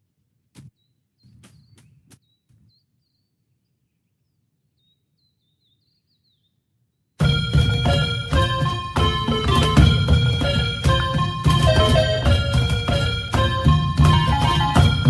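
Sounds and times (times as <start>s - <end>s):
small bird chirps: 0.7s - 6.7s
background music: 7.2s - 15.0s.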